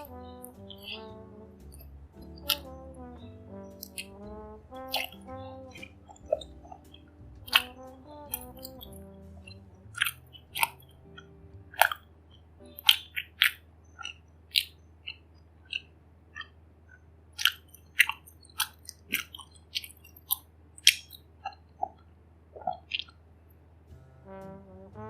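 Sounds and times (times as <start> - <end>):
wet mouth clicks chewing: 4.9 - 5.2, 17.4 - 22.0.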